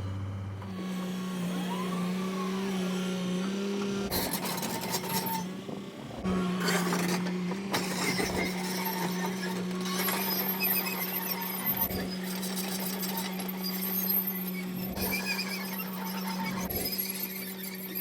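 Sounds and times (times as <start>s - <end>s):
small motor humming: 0.0s - 18.0s
clicks knocks and squeaks: 6.8s - 18.0s.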